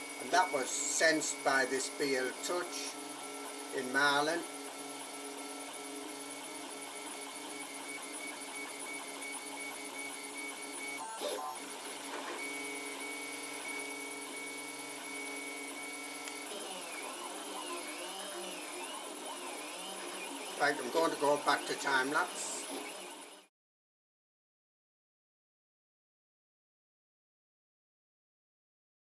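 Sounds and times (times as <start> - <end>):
stepper motors whining: 0.0 - 23.5.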